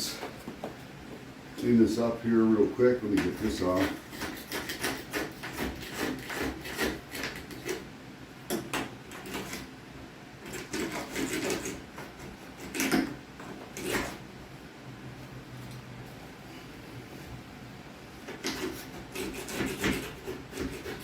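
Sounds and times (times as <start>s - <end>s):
hand scraping caulk: 3.1s - 7.8s, 10.5s - 14.2s, 18.2s - 21.0s.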